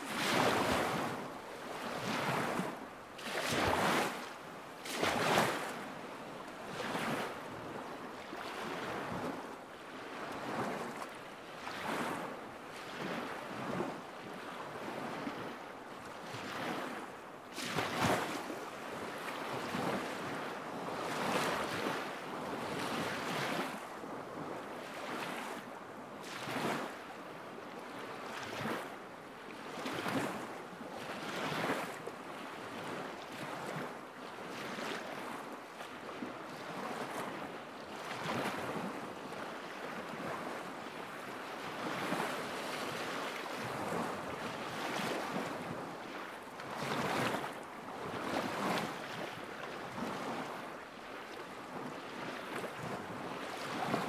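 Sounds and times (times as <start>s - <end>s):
lake waves lapping at shore: 0.0s - 54.0s.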